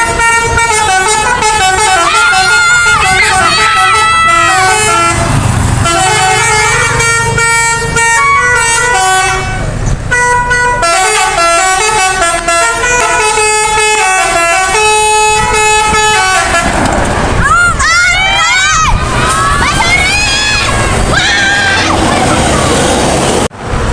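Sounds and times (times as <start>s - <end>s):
musical air horn melody: 0.0s - 16.8s
low engine rumble: 0.0s - 23.9s.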